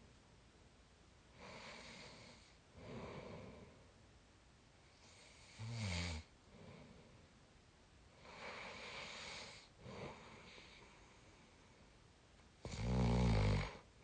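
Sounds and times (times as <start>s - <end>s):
low-pitched snore: 12.6s - 13.8s.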